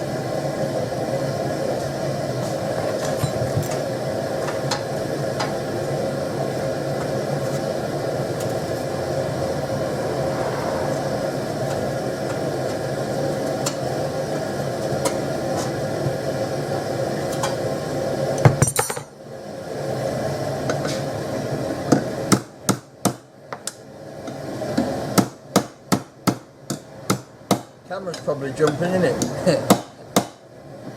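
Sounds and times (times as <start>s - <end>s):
gas forge burner roaring: 0.0s - 30.9s.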